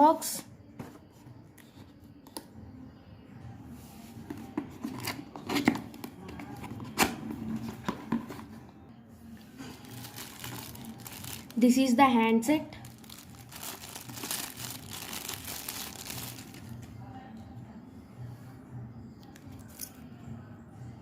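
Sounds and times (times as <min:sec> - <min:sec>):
cardboard packaging rustling: 0:09.7 - 0:11.7, 0:12.8 - 0:16.9.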